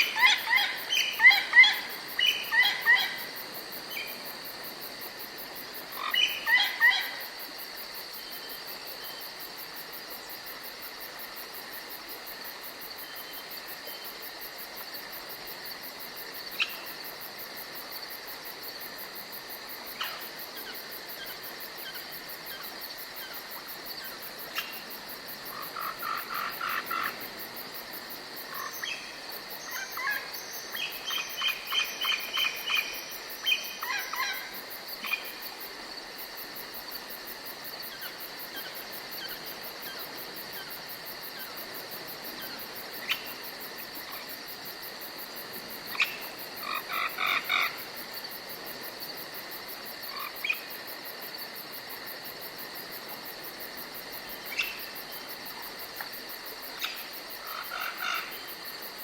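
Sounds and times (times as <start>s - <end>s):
crickets and insects chirring: 0.0s - 59.0s
frog croaks: 25.5s - 27.3s, 45.9s - 47.9s, 56.8s - 58.5s.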